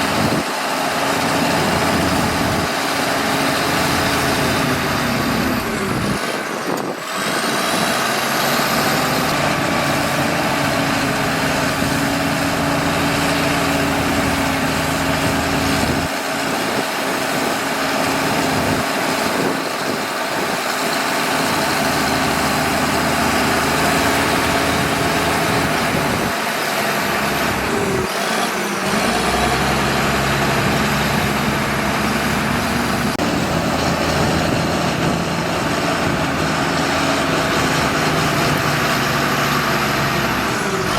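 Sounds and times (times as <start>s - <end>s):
bulldozer diesel engine rumbling: 0.0s - 40.9s.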